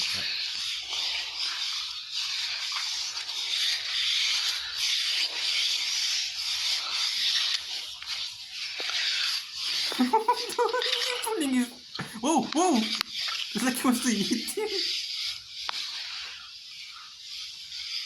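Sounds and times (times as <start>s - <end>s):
hands rubbing skin: 9.9s - 14.9s.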